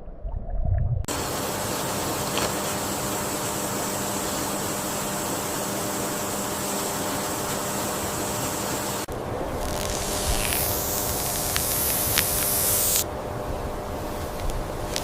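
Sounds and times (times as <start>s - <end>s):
flowing water rushing: 1.1s - 13.0s
bright water hiss: 1.1s - 13.1s.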